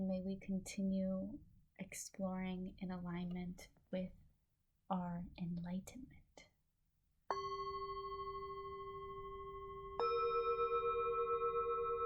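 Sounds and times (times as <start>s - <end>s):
singing bowls ringing: 7.3s - 12.0s.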